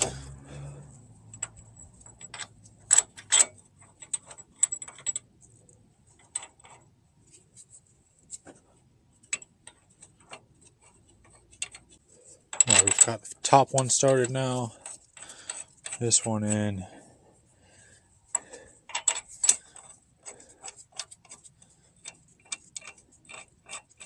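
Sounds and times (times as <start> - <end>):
metal bolts and tools clinking: 1.2 - 6.8, 9.2 - 17.0, 18.3 - 24.0.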